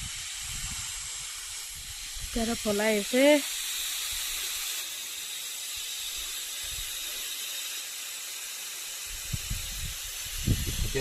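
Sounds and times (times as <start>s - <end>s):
compressed air hissing: 0.0s - 11.0s.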